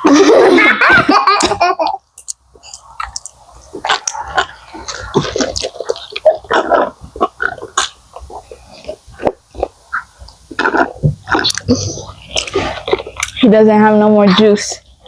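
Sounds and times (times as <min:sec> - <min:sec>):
chewing and smacking mouth sounds: 0:02.2 - 0:13.4.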